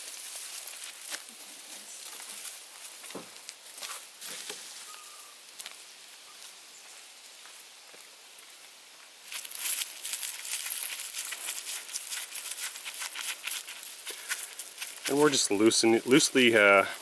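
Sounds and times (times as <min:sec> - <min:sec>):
faint chirp: 0:04.8 - 0:05.4
handling rustles and clicks: 0:09.3 - 0:17.0
steady high hiss: 0:14.5 - 0:17.0.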